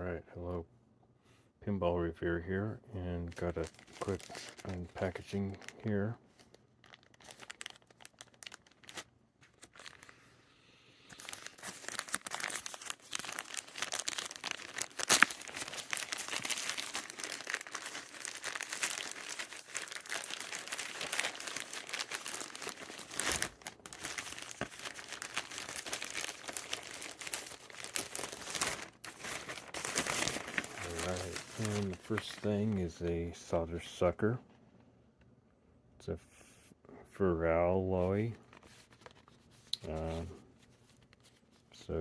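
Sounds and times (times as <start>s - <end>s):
packaging crinkling and tearing: 3.3s - 10.3s, 11.1s - 33.0s, 38.4s - 41.7s.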